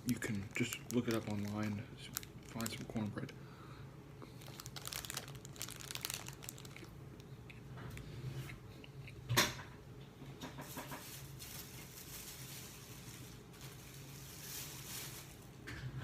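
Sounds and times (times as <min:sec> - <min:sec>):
food packaging rustling: 0:00.0 - 0:03.2, 0:04.3 - 0:07.0, 0:10.6 - 0:15.7.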